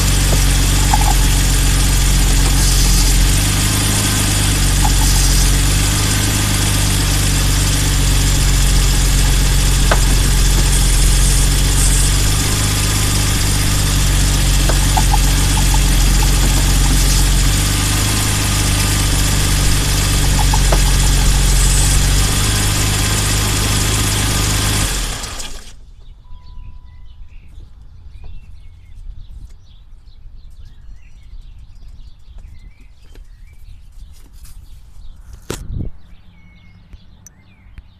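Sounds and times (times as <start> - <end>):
car engine idling: 0.0 - 25.8.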